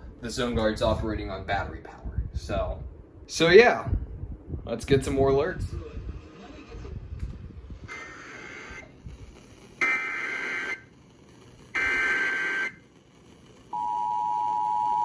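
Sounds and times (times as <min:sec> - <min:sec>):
buzzy data bursts over radio: 0:07.9 - 0:13.8
two-tone attention signal: 0:13.8 - 0:15.0.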